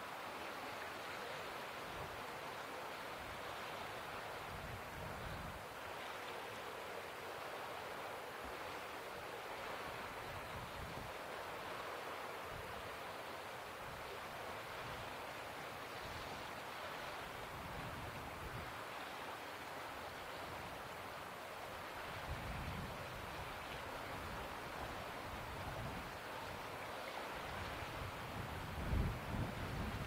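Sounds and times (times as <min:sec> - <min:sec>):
wind buffeting microphone: 0:28.0 - 0:30.0.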